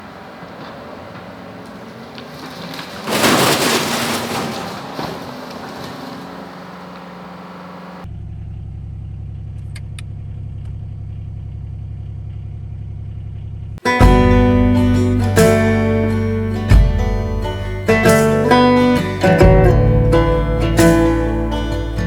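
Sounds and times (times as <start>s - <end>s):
heavy equipment diesel engine: 0.0s - 9.7s, 13.8s - 22.0s.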